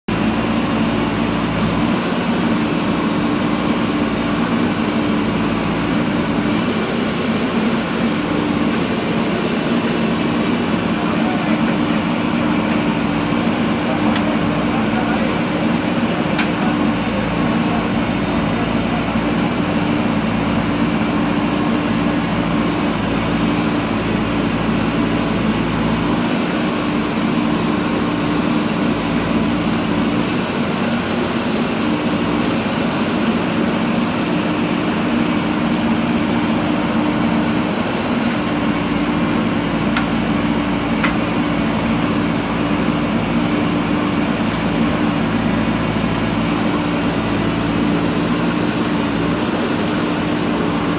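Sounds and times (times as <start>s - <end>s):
diesel engine digging under load: 0.1s - 50.9s.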